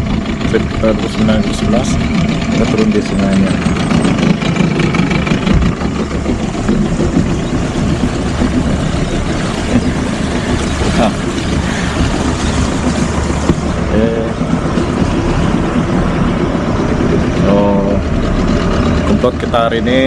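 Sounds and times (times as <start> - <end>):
outboard motor running: 0.0 - 20.0
wind and water rushing: 3.8 - 19.2.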